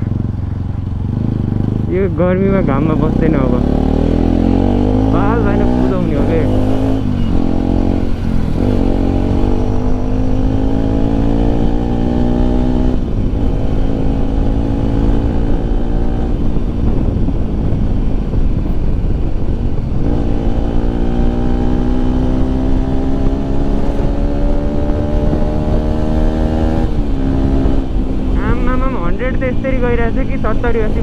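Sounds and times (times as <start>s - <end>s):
motorcycle engine revving: 0.0s - 31.0s
road and wind noise: 0.0s - 31.0s.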